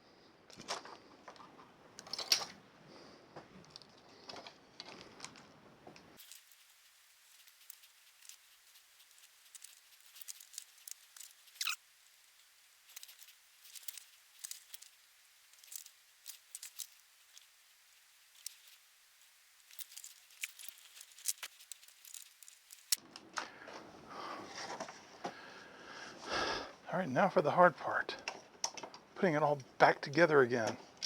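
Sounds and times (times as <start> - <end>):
small parts and tools clicking: 0.5 - 2.6, 3.6 - 23.5
rustling: 3.1 - 26.2.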